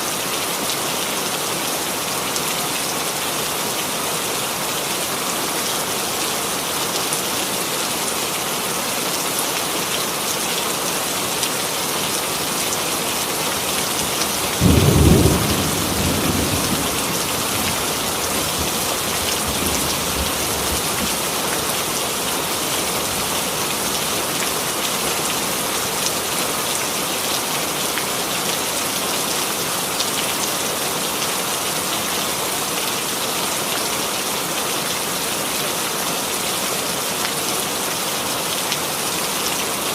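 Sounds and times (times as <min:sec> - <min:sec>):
steady rain falling: 0:00.0 - 0:39.9
thunder clap rumbling: 0:14.5 - 0:21.2.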